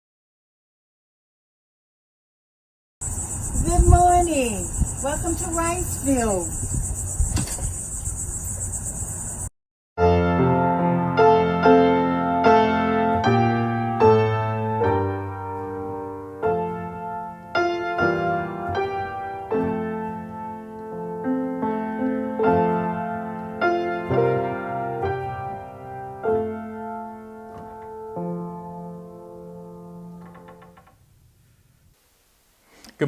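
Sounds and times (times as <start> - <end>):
slow piano chords: 10.0 - 30.5.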